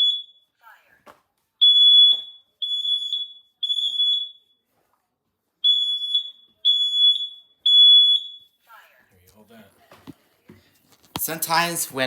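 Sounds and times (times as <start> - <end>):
smoke alarm high-pitched beeps: 0.0 - 0.6, 1.6 - 4.6, 5.6 - 8.6.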